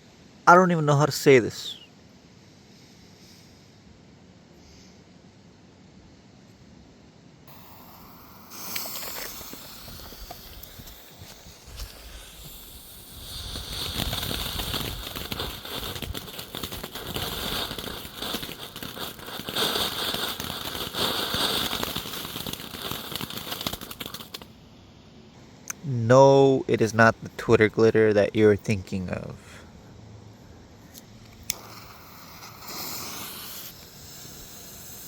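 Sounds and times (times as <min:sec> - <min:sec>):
firework pops: 0:07.5 - 0:24.5, 0:31.3 - 0:35.0
firework hissing and crackling: 0:07.5 - 0:24.6, 0:31.0 - 0:35.0.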